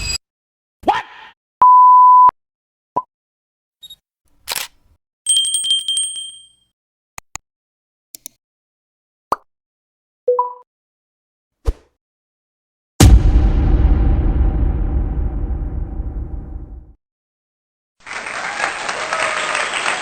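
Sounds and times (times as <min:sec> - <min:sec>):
censor bleep tone: 0:01.6 - 0:02.3
ringing two-tone chime: 0:05.3 - 0:06.6
brief whoosh: 0:13.0 - 0:16.8.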